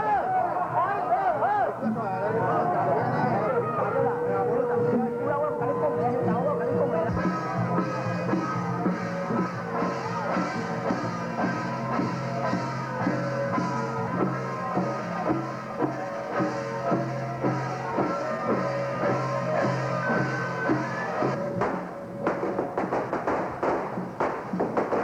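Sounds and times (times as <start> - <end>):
sustained melody notes: 2.6 - 22.3
steady drum beat: 4.1 - 25.0.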